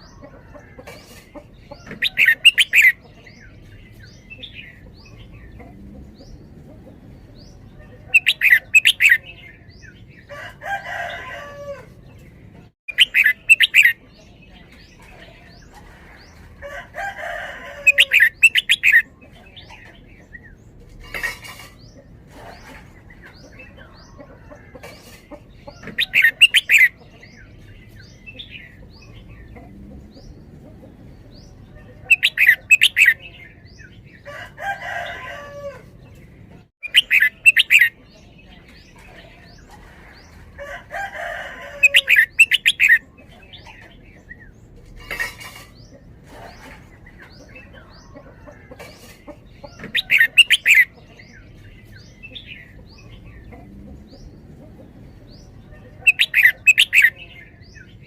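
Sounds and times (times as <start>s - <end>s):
bird singing bubbly phrases: 12.9s - 14.0s.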